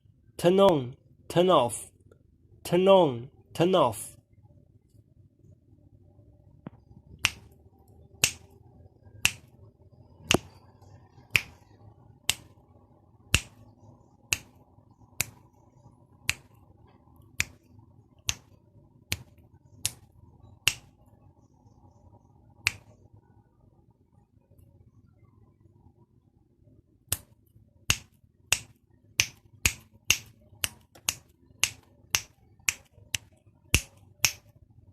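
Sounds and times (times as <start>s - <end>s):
finger snaps: 6.6s - 7.5s, 8.2s - 8.5s, 9.2s - 9.5s, 10.2s - 10.6s, 11.3s - 11.7s, 12.3s - 12.6s, 13.3s - 13.6s, 14.3s - 14.6s, 15.2s - 15.4s, 16.2s - 16.6s, 17.4s - 17.6s, 18.3s - 18.5s, 19.1s - 20.0s, 20.6s - 20.9s, 22.6s - 23.0s, 27.1s - 34.5s.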